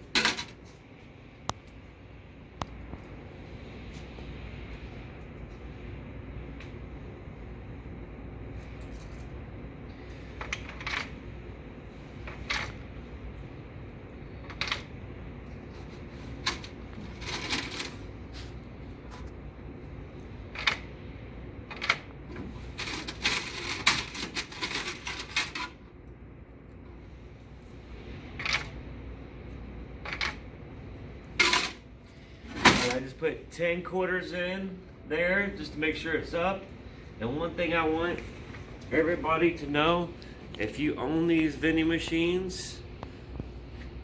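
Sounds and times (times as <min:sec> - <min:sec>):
coins clinking in coin mechanism: 0:00.1 - 0:00.6, 0:10.4 - 0:11.2, 0:16.4 - 0:18.0, 0:22.8 - 0:25.8, 0:30.0 - 0:30.4, 0:31.4 - 0:31.8.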